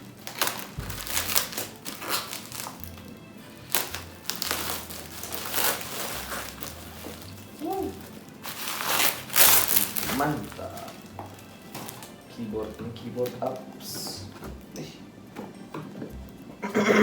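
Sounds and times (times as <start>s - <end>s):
background music with bass line: 0.0s - 8.1s
packaging crinkling and rustling: 0.0s - 13.8s.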